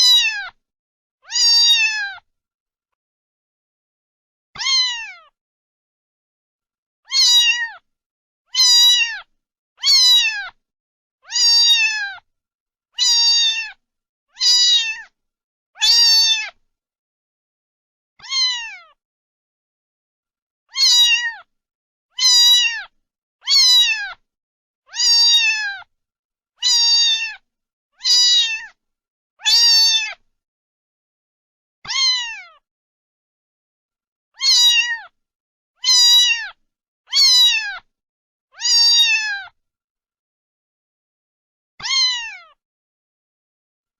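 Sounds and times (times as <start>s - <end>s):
cat meowing: 0.0s - 0.6s, 1.2s - 2.2s, 4.6s - 5.3s, 7.1s - 7.8s, 8.5s - 10.6s, 11.2s - 12.2s, 13.0s - 13.8s, 14.4s - 15.1s, 15.8s - 16.6s, 18.2s - 19.0s, 20.7s - 21.5s, 22.2s - 24.2s, 24.9s - 25.9s, 26.6s - 27.4s, 28.0s - 28.8s, 29.4s - 30.2s, 31.8s - 32.6s, 34.4s - 35.2s, 35.8s - 37.9s, 38.6s - 39.6s, 41.8s - 42.6s.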